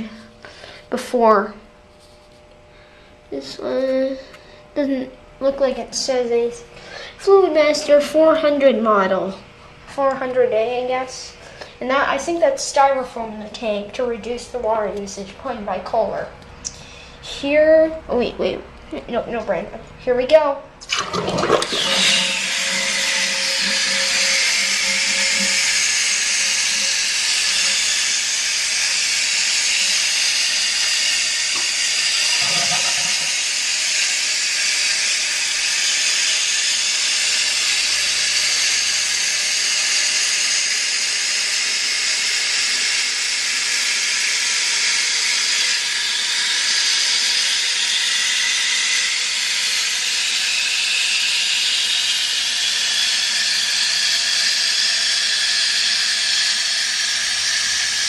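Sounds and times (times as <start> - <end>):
toilet fill valve hissing: 20.8 - 58.0.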